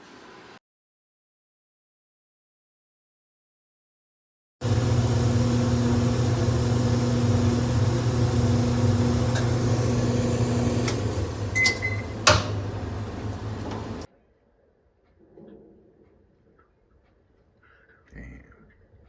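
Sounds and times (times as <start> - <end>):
clothes dryer motor hum: 4.6 - 14.1
clicks: 5.4 - 14.1.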